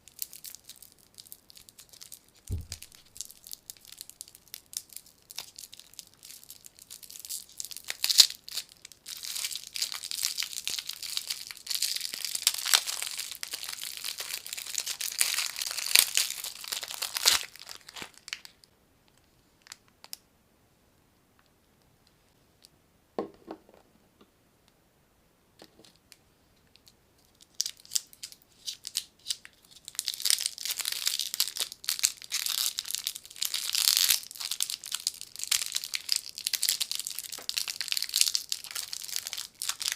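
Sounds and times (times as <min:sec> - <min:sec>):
plastic wrappers crinkling and tearing: 0:00.0 - 0:18.7, 0:26.8 - 0:39.9.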